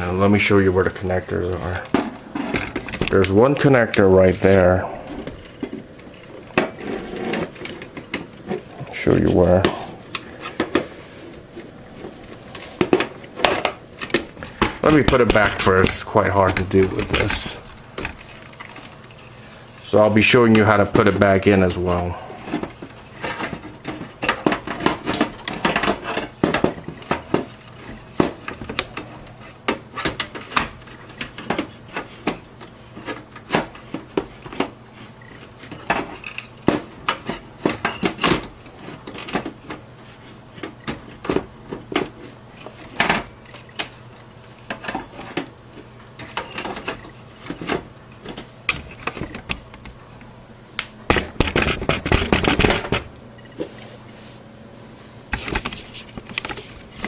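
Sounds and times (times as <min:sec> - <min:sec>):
handling noise: 0:00.0 - 0:57.0
clicks and knocks of handling: 0:00.8 - 0:19.9, 0:20.5 - 0:39.9, 0:40.5 - 0:53.8, 0:55.3 - 0:57.0.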